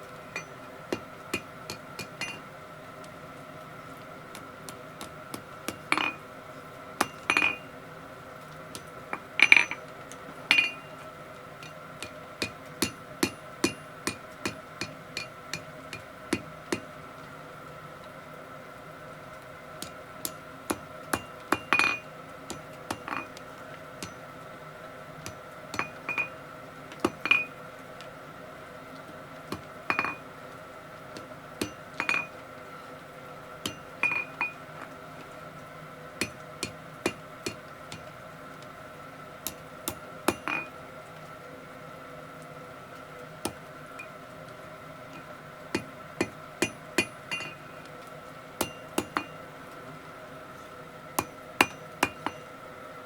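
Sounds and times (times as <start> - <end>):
steady hum: 0.0 - 53.0
hammer striking steel on anvil: 0.3 - 2.5, 5.0 - 6.2, 7.0 - 7.7, 8.7 - 9.8, 10.5 - 11.0, 11.6 - 16.9, 19.8 - 23.4, 24.0 - 24.2, 25.2 - 26.4, 27.0 - 27.5, 29.5 - 30.2, 31.2 - 32.4, 33.6 - 34.6, 36.2 - 38.1, 39.4 - 40.7, 45.1 - 47.7, 48.6 - 49.4, 51.2 - 52.5.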